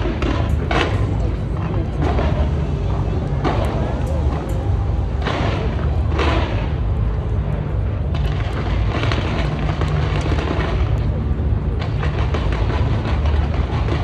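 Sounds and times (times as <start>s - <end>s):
fireworks booming: 0.0s - 14.0s
fireworks popping and crackling: 0.0s - 14.0s.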